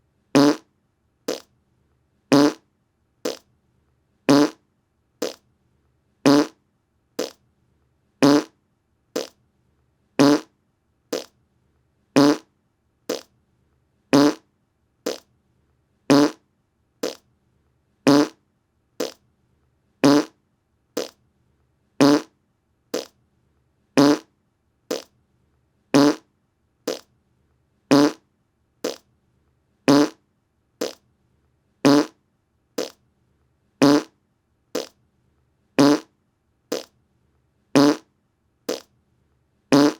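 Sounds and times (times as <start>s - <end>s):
fart sound effect: 0.4s - 0.6s, 1.3s - 1.5s, 2.3s - 2.6s, 4.3s - 4.6s, 6.3s - 6.6s, 7.2s - 7.4s, 8.2s - 8.5s, 9.2s - 9.4s, 10.2s - 10.5s, 12.2s - 12.5s, 14.2s - 14.4s, 15.1s - 15.3s, 16.1s - 16.4s, 17.0s - 17.2s, 18.1s - 18.4s, 19.0s - 19.2s, 20.0s - 20.4s, 21.0s - 21.2s, 22.0s - 22.3s, 24.0s - 24.3s, 24.9s - 25.1s, 26.0s - 26.2s, 26.9s - 27.1s, 27.9s - 28.2s, 28.8s - 29.0s, 29.9s - 30.2s, 31.9s - 32.2s, 33.8s - 34.1s, 34.8s - 35.0s, 35.8s - 36.1s, 36.7s - 36.9s, 37.8s - 38.1s, 38.7s - 38.9s.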